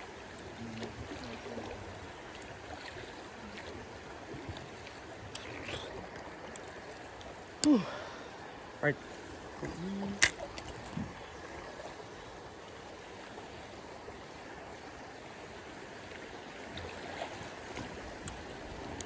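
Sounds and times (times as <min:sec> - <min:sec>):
river water running: 0:00.0 - 0:19.0.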